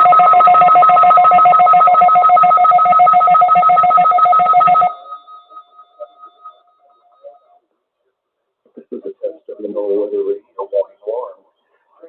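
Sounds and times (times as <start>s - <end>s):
two-tone attention signal: 0.0s - 7.6s.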